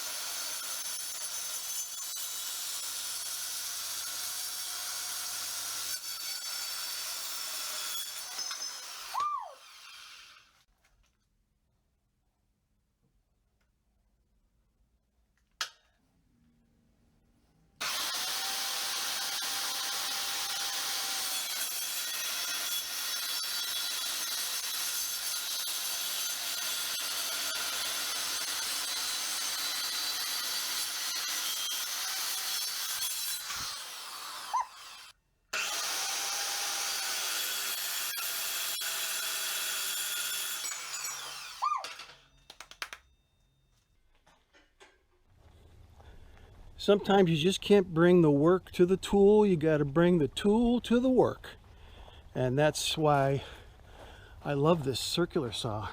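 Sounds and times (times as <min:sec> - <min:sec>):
circular saw cutting metal: 0:05.7 - 0:10.5, 0:17.8 - 0:42.2.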